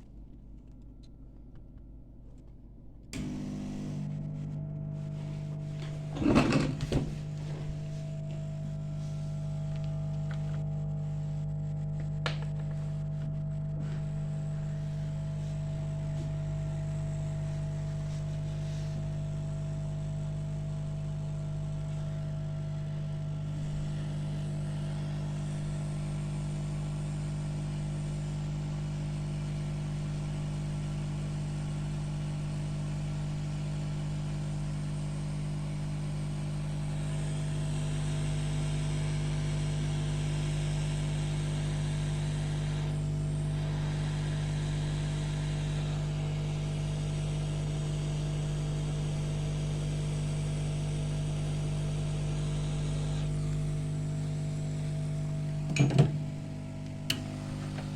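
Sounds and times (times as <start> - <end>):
electric motor hum: 3.1 - 57.9.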